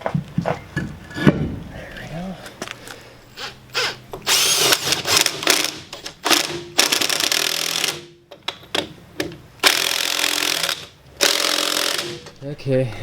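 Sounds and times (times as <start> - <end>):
impact wrench hammering: 3.8 - 8.2, 8.8 - 12.4.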